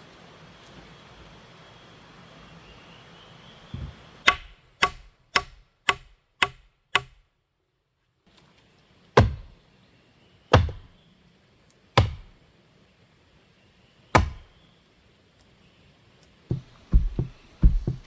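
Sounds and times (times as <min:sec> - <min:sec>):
hand tool striking wood: 0:03.8 - 0:07.2, 0:09.2 - 0:09.6, 0:10.5 - 0:10.9, 0:12.0 - 0:12.4, 0:14.2 - 0:14.5, 0:16.5 - 0:18.0.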